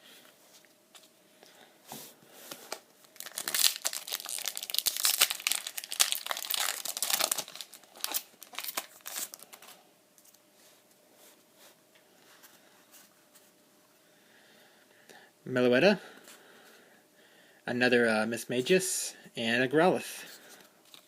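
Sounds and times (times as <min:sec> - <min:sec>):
foil wrapper crinkling and tearing: 0:03.0 - 0:09.8.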